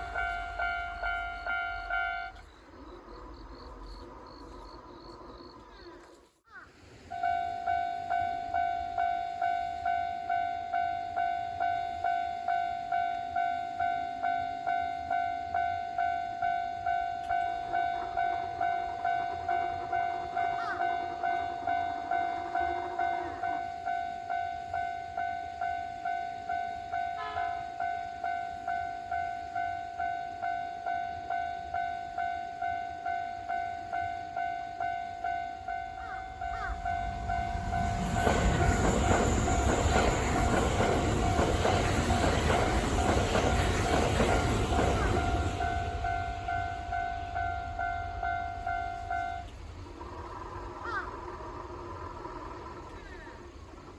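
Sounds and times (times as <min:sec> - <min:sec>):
train low rumble: 0:00.0 - 0:53.9
level crossing alarm bell: 0:07.2 - 0:49.5.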